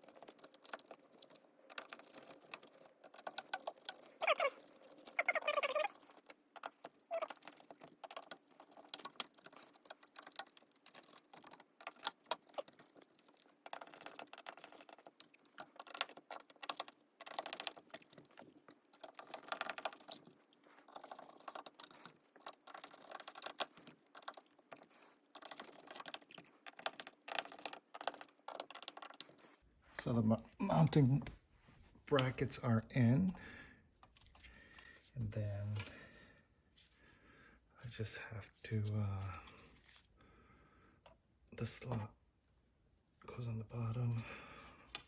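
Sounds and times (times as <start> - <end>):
plastic and metal clicks and scraping: 0.0 - 4.4, 6.1 - 29.6.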